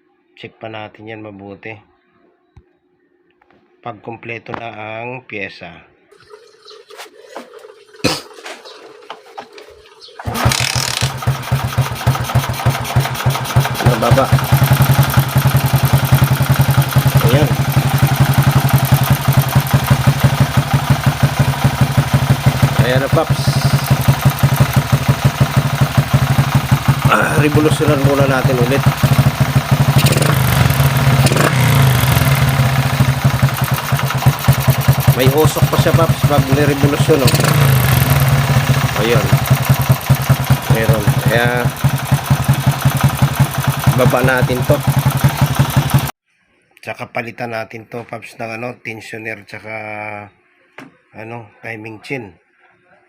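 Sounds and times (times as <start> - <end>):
engine rattle: 8.5 - 46.2
motorcycle engine running: 10.1 - 46.2.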